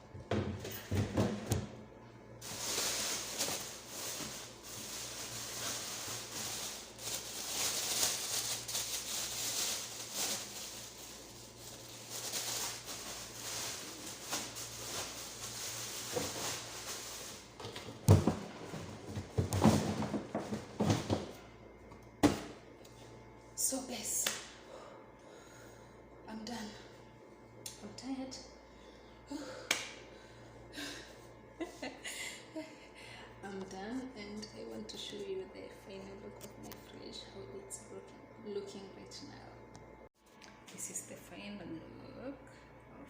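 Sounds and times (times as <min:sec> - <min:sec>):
rustling and handling items: 0:00.5 - 0:22.0.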